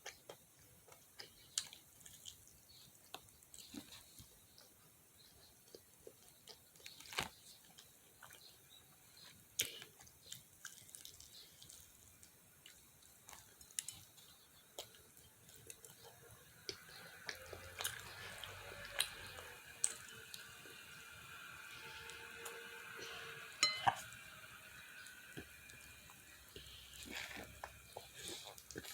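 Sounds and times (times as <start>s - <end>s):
wet chewing and smacking: 0.0s - 20.4s, 26.6s - 28.9s.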